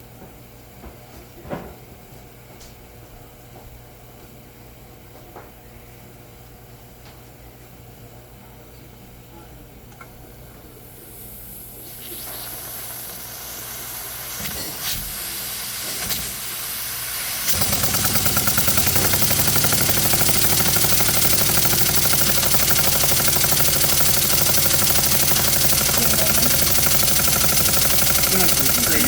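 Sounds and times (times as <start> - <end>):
steam hissing: 11.0 - 29.0
steam engine exhaust beat: 12.2 - 29.0.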